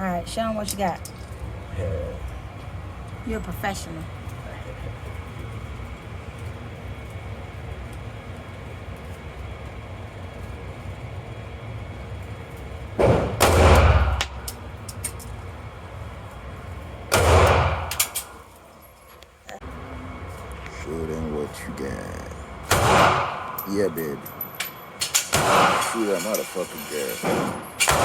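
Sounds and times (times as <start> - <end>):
handgun shots: 13.0 - 14.3, 17.1 - 18.3, 22.7 - 23.6, 25.0 - 26.0, 27.3 - 28.0.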